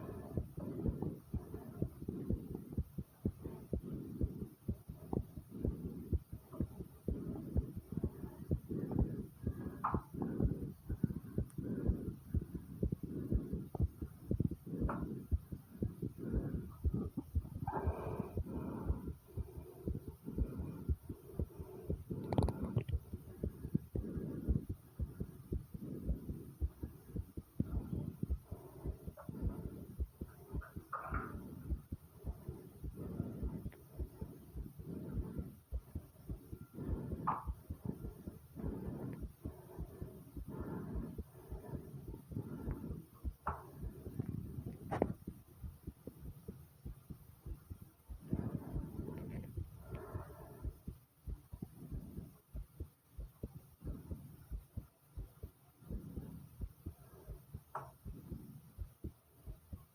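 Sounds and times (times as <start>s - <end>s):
heartbeat pounding fast: 0.0s - 59.9s
stomach gurgle: 21.9s - 35.6s, 36.2s - 47.1s.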